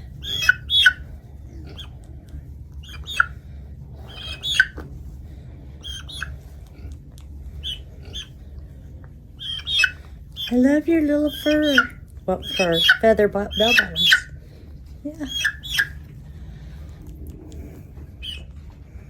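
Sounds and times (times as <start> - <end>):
hen squawking: 0.0 - 2.0, 2.8 - 3.4, 4.0 - 4.8, 5.8 - 6.5, 7.5 - 8.4, 9.4 - 14.5, 15.1 - 16.1, 18.1 - 18.5.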